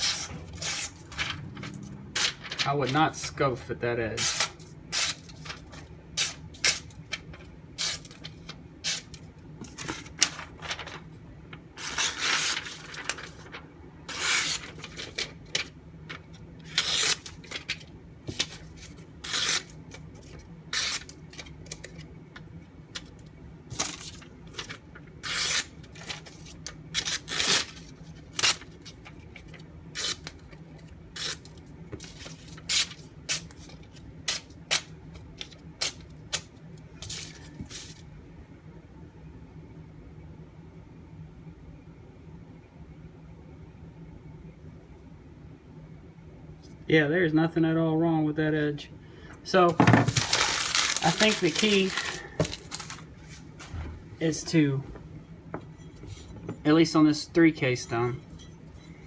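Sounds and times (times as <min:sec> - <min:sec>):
faint low hum: 0:00.1 - 0:29.8.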